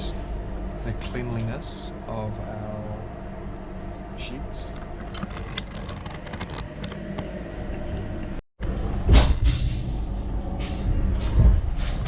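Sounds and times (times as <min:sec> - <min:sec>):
train carriage rumble: 0:00.0 - 0:12.0.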